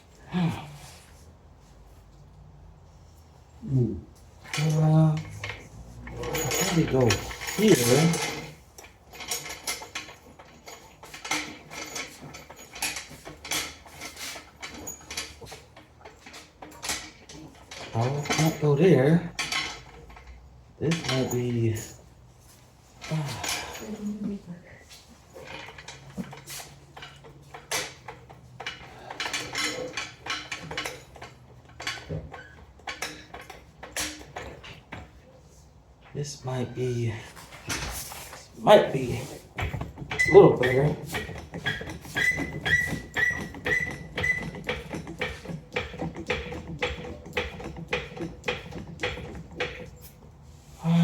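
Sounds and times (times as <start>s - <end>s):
car jack metal clinks: 4.4s - 22.1s, 25.4s - 35.3s, 38.8s - 50.4s.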